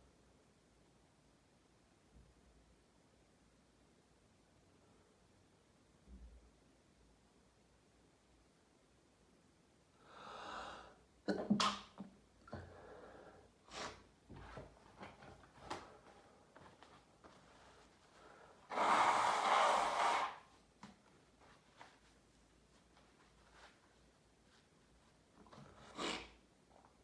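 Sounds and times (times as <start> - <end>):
man breathing in: 10.0 - 11.0
sniffles: 25.8 - 26.4.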